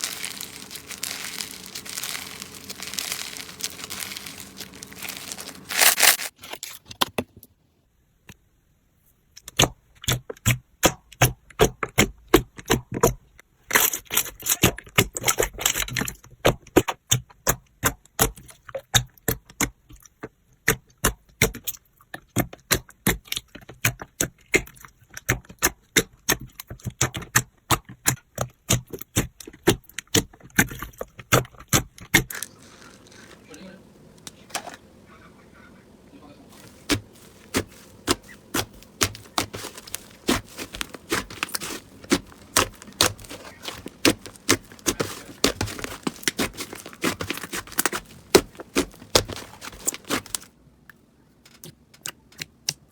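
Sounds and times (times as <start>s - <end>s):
slime clicking and popping: 36.9s - 50.5s.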